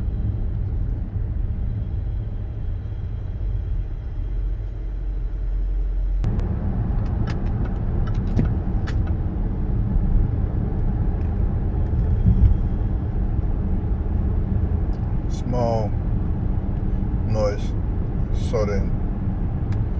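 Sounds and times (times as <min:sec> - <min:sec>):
car road and engine noise: 0:00.0 - 0:19.9.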